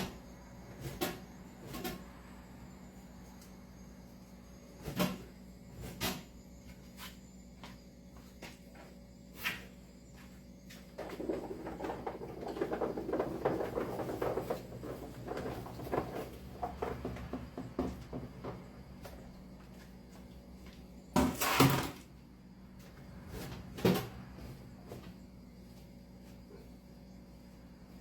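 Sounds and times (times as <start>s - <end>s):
rustling and clattering of pieces: 10.8s - 18.7s.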